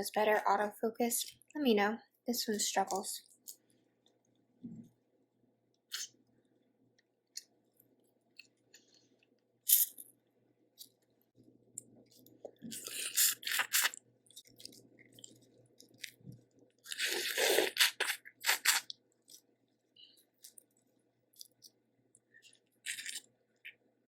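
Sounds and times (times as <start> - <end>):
crunching and chewing seafood: 10.8 - 23.8.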